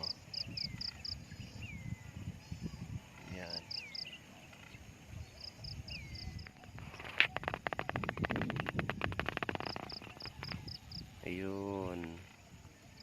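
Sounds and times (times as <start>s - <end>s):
birds chirping and whistling: 0.0s - 13.0s
rapid run of clicks: 7.2s - 10.6s.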